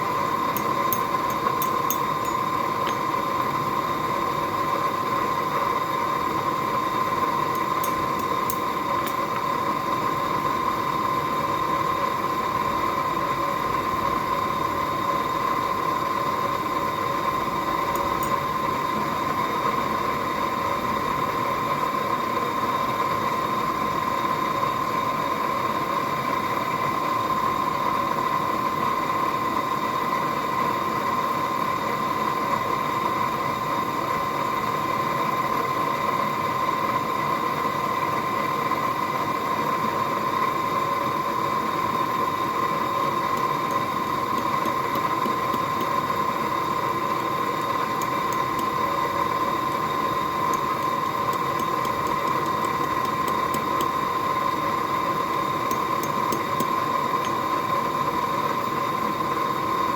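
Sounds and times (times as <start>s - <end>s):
forge blower rushing and whining: 42.0s - 59.8s.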